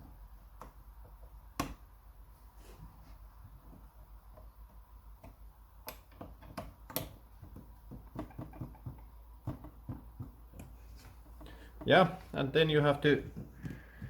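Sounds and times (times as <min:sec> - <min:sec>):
small clicks and light knocks: 0:03.6 - 0:11.9.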